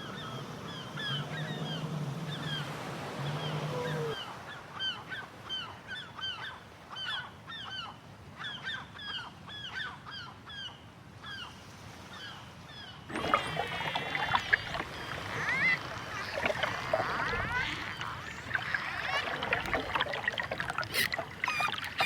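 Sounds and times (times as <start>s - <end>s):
animals honking: 13.1s - 22.0s.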